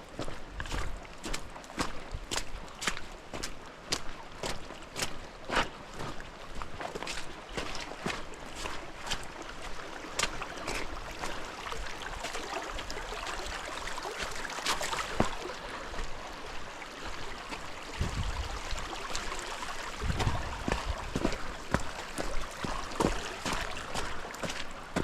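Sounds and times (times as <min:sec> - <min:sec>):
river water rushing: 0:00.2 - 0:25.0.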